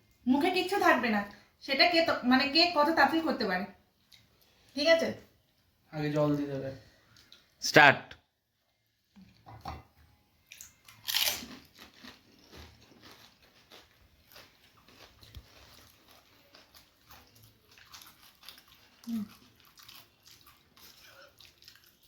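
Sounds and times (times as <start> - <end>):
wet chewing: 4.0 - 4.8, 6.3 - 7.6, 10.4 - 22.0
crunching crisp shells: 10.5 - 22.0.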